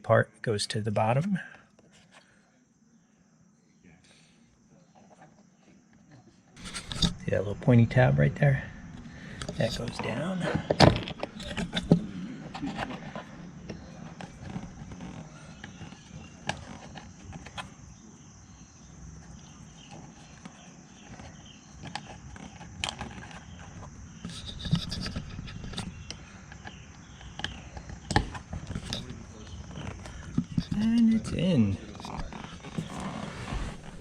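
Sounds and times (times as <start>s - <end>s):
trim scraping and rubbing: 6.6s - 7.3s, 27.5s - 34.0s
sharp clicks and knocks: 21.1s - 31.4s.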